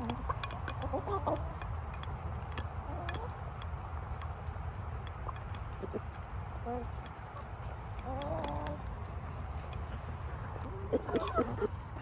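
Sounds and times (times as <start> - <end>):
chickens clucking: 0.0 - 12.0
steady low rumble: 0.0 - 12.0.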